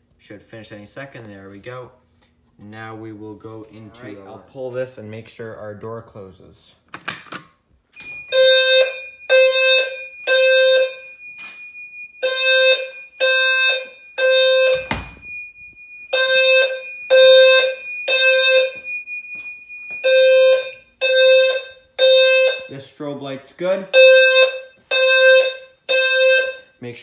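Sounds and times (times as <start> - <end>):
fire alarm beeps: 8.0 - 22.8, 23.9 - 26.8
steady high tone: 8.0 - 22.9.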